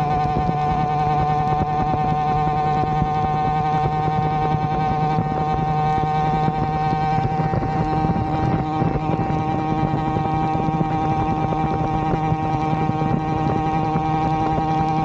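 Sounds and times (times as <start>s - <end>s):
two-stroke engine running: 0.0s - 15.0s.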